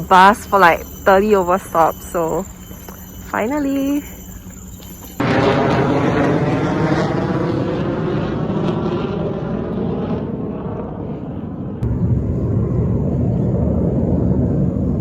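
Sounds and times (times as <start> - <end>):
passing engine drone: 5.2 - 15.0.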